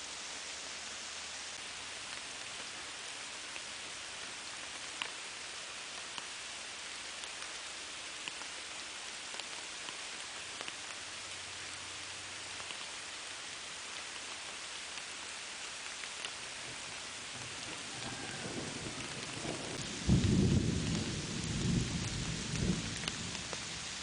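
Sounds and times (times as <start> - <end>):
raindrops ticking close by: 0.0 - 24.0
steady rain hiss: 0.0 - 24.0.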